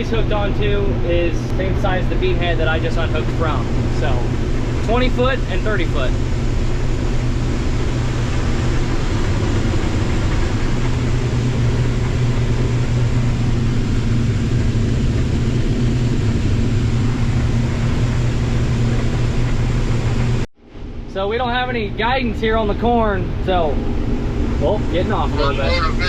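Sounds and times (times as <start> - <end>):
combine harvester engine hum: 0.0 - 20.5, 22.6 - 26.0.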